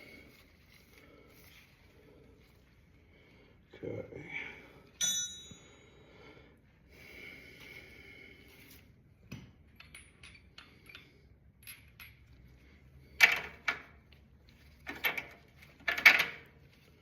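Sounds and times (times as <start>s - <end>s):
metal tools clinking: 5.0s - 5.7s.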